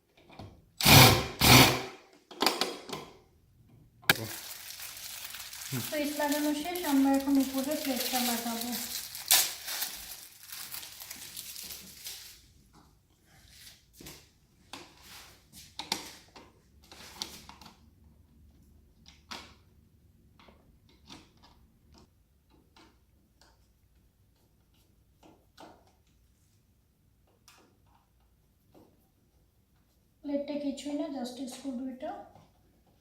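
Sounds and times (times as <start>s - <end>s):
plastic rustling: 4.1s - 12.5s.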